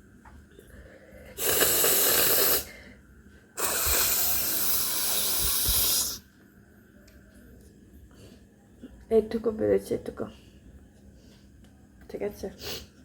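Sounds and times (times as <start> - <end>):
woman blowing her nose: 1.4 - 2.8, 3.6 - 6.2.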